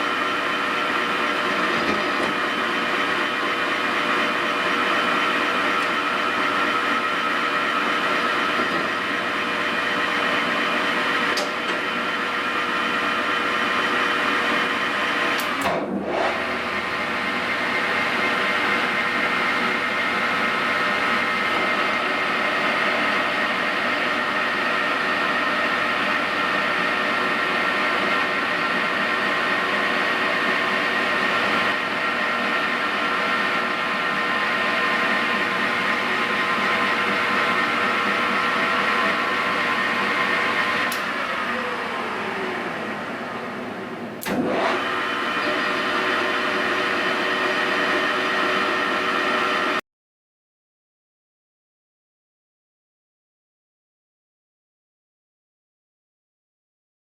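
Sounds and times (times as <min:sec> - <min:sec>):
lathe whirring with high whine: 0:00.0 - 0:49.8
lathe switch click: 0:11.4 - 0:11.6, 0:44.2 - 0:44.5.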